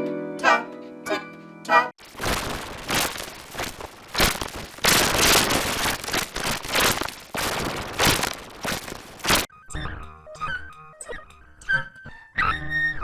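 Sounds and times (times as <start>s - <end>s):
harsh distorted crackling: 2.0s - 9.5s.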